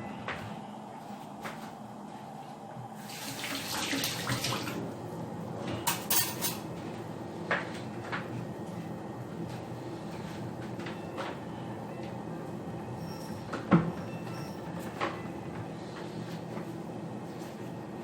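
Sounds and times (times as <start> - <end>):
running water: 3.1 - 4.8
kitchen utensils clinking: 5.9 - 6.7.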